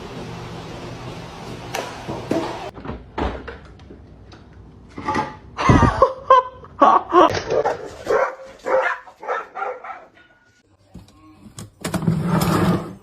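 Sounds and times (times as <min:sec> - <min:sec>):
dog barking: 0:07.6 - 0:10.3.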